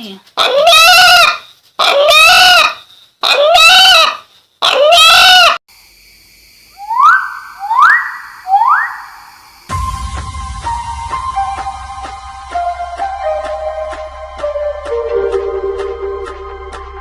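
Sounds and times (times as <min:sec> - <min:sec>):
bird calling loudly: 0:06.8 - 0:09.4
electronic music tone swooping: 0:06.8 - 0:17.0.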